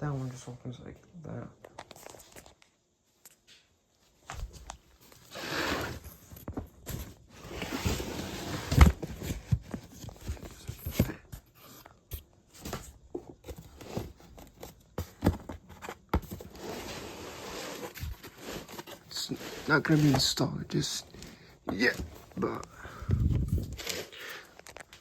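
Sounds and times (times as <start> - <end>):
cardboard scraping and rustling: 4.3 - 25.0.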